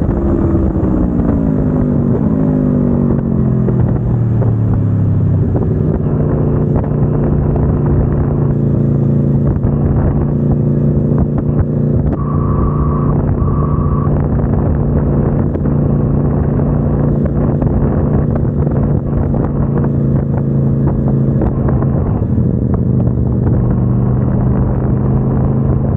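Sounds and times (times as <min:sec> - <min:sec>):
motorcycle engine running: 0:00.0 - 0:25.9
short high beeps: 0:12.2 - 0:14.2.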